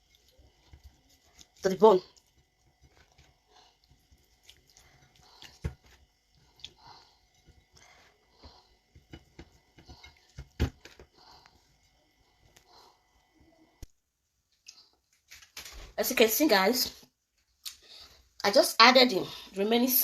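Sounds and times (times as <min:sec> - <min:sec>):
wet squelches of hands mixing meat: 0:00.0 - 0:07.1.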